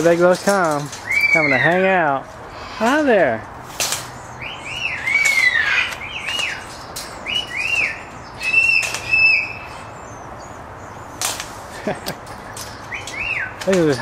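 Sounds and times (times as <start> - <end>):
parrots chirping: 0.9 - 3.4, 4.1 - 14.0
wings flapping: 5.0 - 9.8, 11.2 - 14.0.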